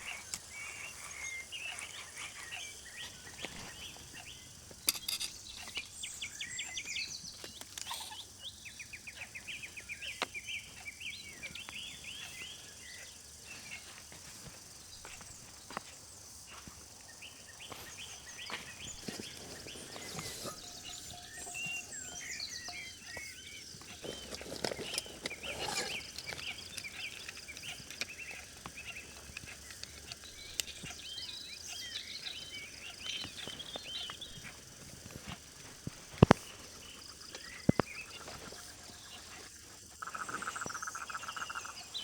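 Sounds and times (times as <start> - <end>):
small birds twittering: 0.0 - 42.0
sharp clicks and light knocks: 18.6 - 31.1, 33.0 - 36.6.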